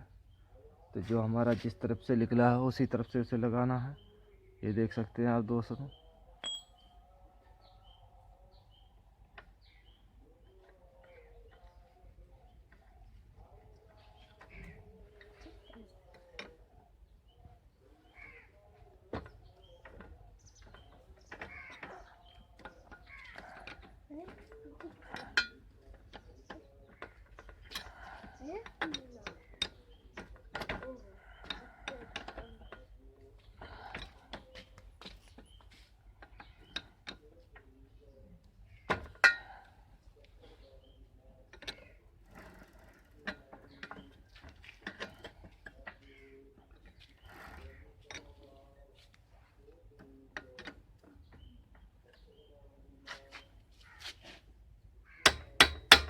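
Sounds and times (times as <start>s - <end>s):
faint birds chirping: 0.0s - 56.0s
metallic clicks and knocks: 50.0s - 52.3s, 55.2s - 56.0s.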